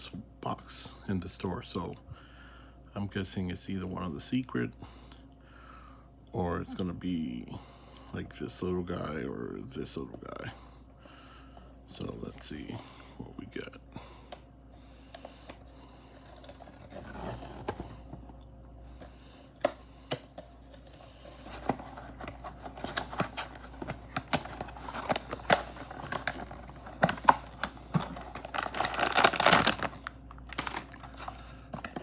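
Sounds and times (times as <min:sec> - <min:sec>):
packaging tearing and crinkling: 0:16.0 - 0:18.0, 0:21.5 - 0:32.0.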